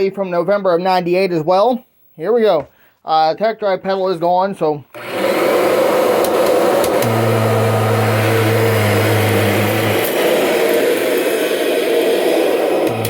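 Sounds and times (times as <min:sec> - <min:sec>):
vacuum cleaner motor running: 0:04.9 - 0:13.0.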